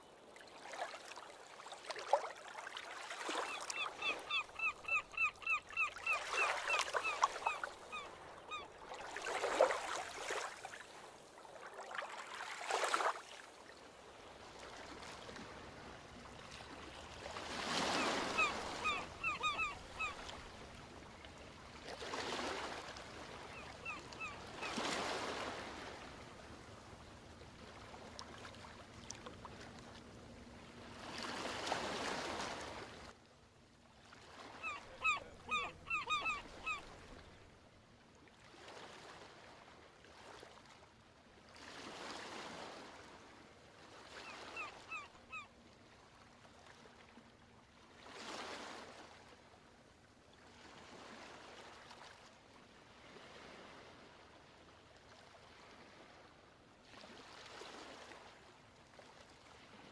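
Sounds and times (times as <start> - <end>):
ocean waves breaking: 0.6 - 13.4, 14.0 - 33.1, 34.0 - 37.5
bird giving short calls: 17.9 - 20.2, 34.6 - 36.9.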